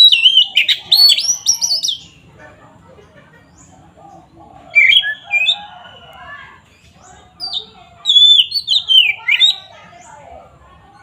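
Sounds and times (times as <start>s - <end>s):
bird singing whistled notes: 0.0s - 2.1s, 4.7s - 6.4s, 7.4s - 9.7s
faint bird chattering: 0.0s - 11.0s.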